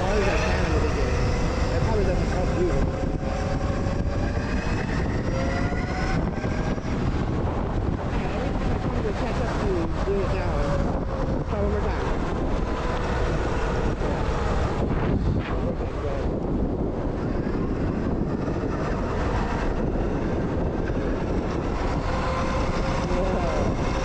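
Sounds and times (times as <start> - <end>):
electric motorcycle motor whine: 0.0 - 24.0
rumble from rough ground: 0.0 - 24.0
wind noise on microphone: 0.0 - 24.0.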